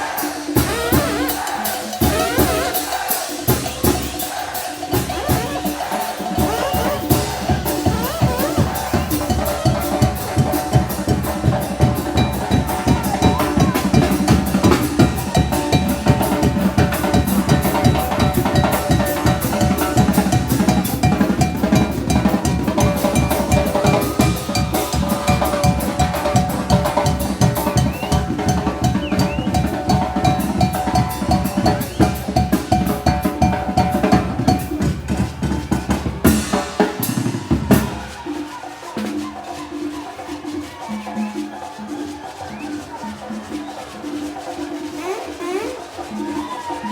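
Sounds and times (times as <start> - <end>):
brass band playing: 0.0 - 34.7, 44.8 - 46.5
bass drum and snare beat: 0.0 - 38.2.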